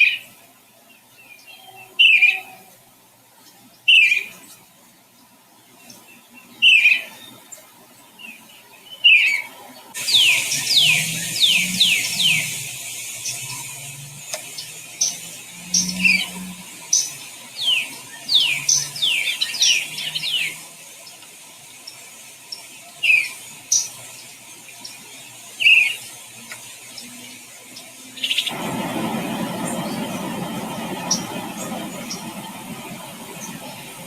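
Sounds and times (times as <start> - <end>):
bird chirping: 3.4 - 4.6, 5.8 - 7.6, 8.2 - 21.2, 26.9 - 34.0
steady rushing noise: 28.3 - 34.0.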